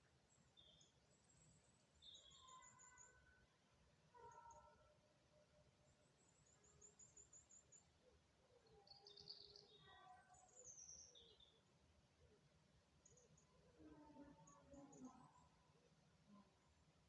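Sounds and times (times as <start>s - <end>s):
bird chirps: 2.0s - 3.2s.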